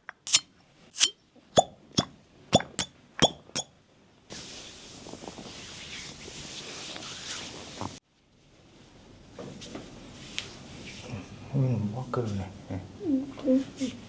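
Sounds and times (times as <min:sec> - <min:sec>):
cupping cups popping on skin: 0:01.6 - 0:03.7
steady hiss: 0:04.3 - 0:08.0.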